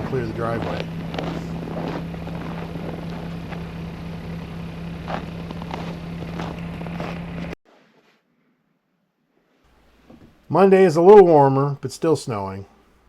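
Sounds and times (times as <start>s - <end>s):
tractor engine droning: 0.0s - 7.6s.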